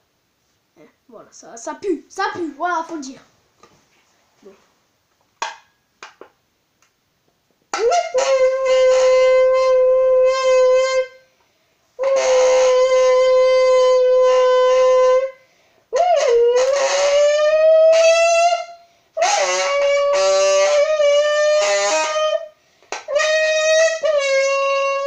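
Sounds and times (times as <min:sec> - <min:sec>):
buzzing blown drink can: 0:19.2 - 0:22.4.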